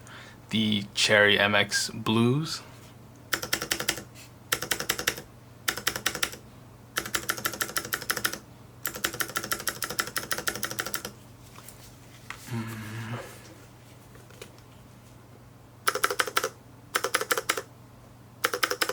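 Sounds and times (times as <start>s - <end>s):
clicky mechanical keyboard typing: 3.3s - 6.4s, 7.0s - 11.1s, 15.9s - 17.7s, 18.4s - 18.9s.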